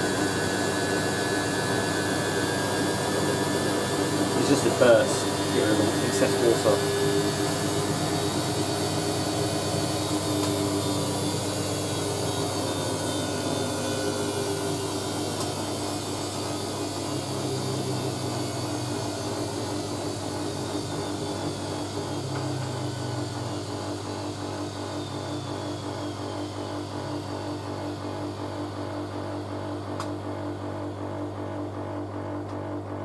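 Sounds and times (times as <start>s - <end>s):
washing machine drain pump humming: 0.0s - 33.0s.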